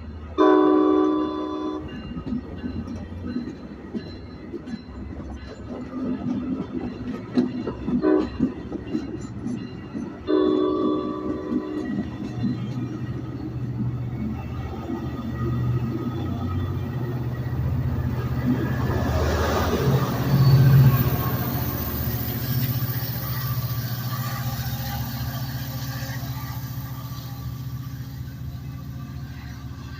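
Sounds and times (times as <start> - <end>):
diesel locomotive engine drone: 0.0 - 29.9
train rumbling on rails: 0.0 - 29.9
train horn: 0.4 - 2.0, 7.9 - 8.5, 10.2 - 12.0.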